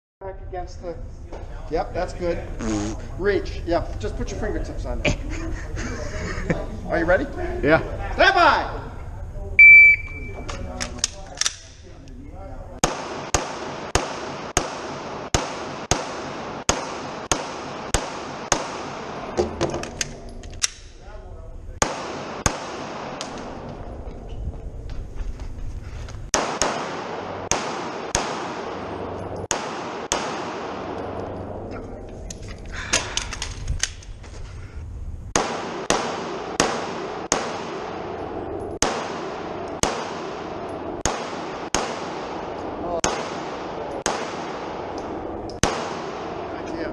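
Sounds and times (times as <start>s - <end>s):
pistol shots: 12.8s - 19.4s, 21.8s - 23.6s, 26.3s - 31.2s, 35.3s - 38.2s, 38.8s - 46.7s.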